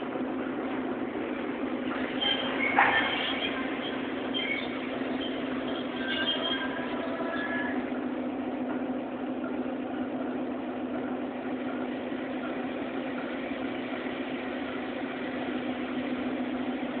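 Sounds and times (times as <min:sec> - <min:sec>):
diesel locomotive engine running: 0:00.0 - 0:17.0.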